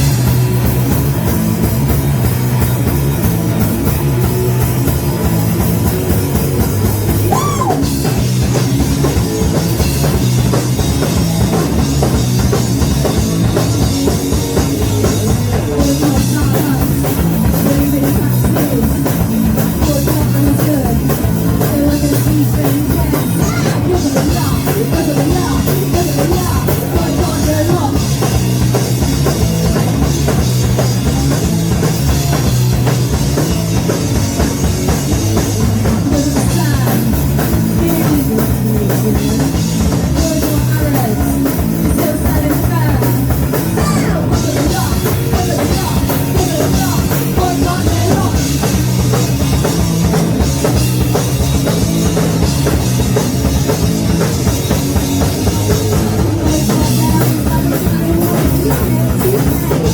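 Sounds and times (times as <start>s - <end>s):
drum kit beat: 0.0s - 59.9s
punk rock band playing: 0.0s - 59.9s.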